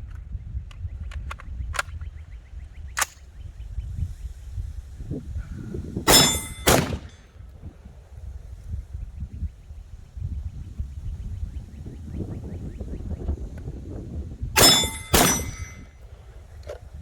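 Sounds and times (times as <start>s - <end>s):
handgun shots: 6.1s - 7.2s, 14.6s - 15.8s
metallic ringing: 6.1s - 7.3s, 14.6s - 16.0s.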